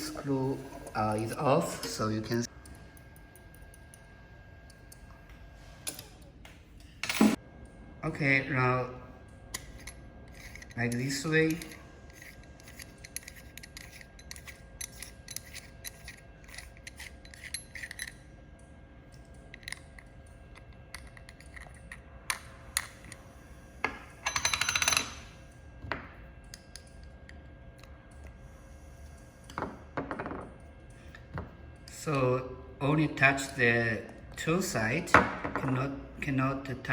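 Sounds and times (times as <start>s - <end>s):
faint steady hum: 0.0s - 36.9s
small metal parts clicking: 9.5s - 18.3s, 19.2s - 23.2s
metal parts rattling clink: 9.6s - 18.3s, 24.2s - 25.2s.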